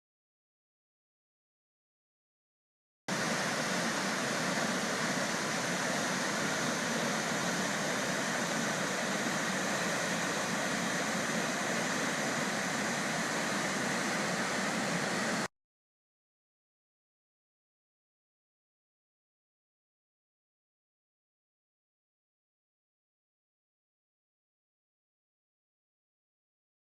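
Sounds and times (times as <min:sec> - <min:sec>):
waterfall roaring: 0:03.1 - 0:15.5.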